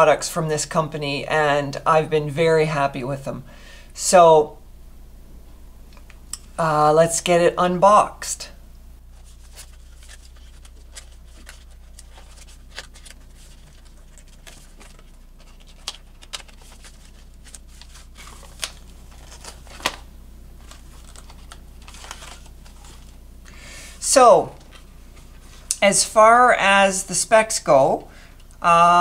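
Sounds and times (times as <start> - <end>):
packaging crinkling: 9.1 - 23.2.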